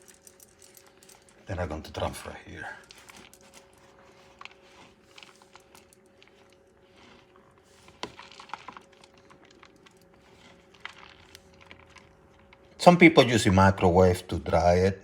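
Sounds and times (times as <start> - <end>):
faint steady hum: 0.0 - 15.0
cauliflower rustling in cloth: 2.9 - 12.2.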